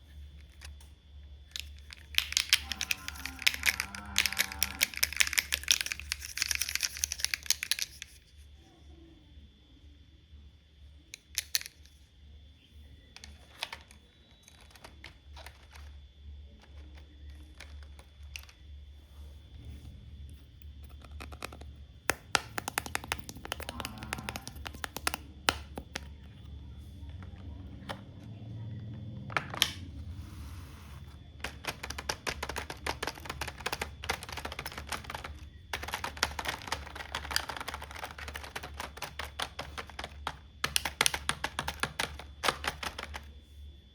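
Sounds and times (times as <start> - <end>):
plastic toy pieces clicking and rattling: 1.5 - 8.3, 11.1 - 12.0, 13.1 - 18.7, 20.8 - 28.0, 29.2 - 29.8, 31.3 - 43.3
plastic toy pieces tapping: 1.5 - 8.3, 11.1 - 12.0, 13.2 - 16.0, 16.6 - 18.6, 20.8 - 28.0, 29.2 - 29.8, 31.4 - 43.3.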